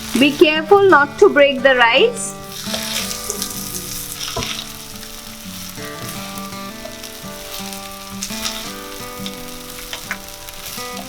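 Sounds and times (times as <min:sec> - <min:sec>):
rice stirred in sizzling oil: 0:00.0 - 0:00.8, 0:02.2 - 0:11.0
soft background music: 0:00.0 - 0:11.0
scraping in a pan: 0:02.4 - 0:11.0.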